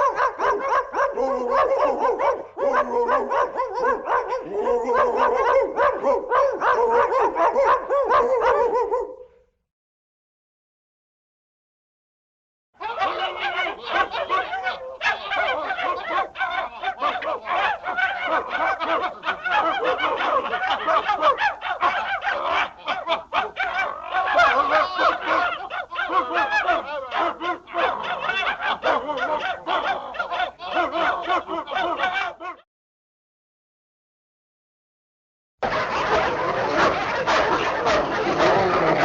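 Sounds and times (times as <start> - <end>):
geese honking and cackling: 23.8 - 32.3, 35.7 - 39.0.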